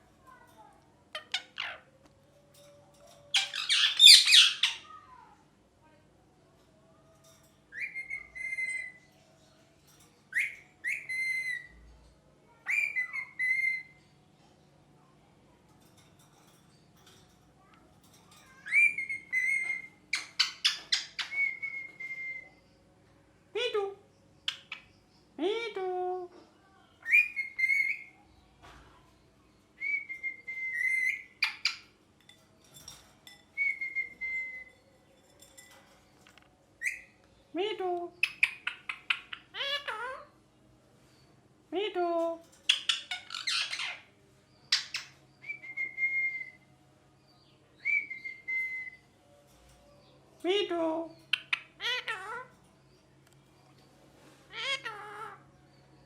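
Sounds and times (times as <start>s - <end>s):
parrot whistled calls: 20.6s - 22.6s, 27.0s - 28.1s, 29.8s - 31.8s, 33.6s - 34.7s, 44.8s - 46.6s, 47.8s - 49.0s
parrot whistling: 45.4s - 46.6s, 47.8s - 49.0s.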